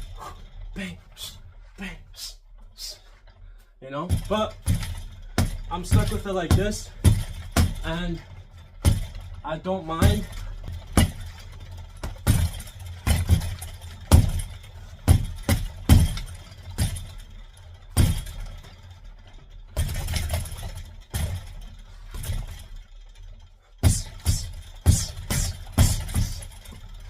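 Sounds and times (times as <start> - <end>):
fists striking punching ball: 23.8 - 26.7.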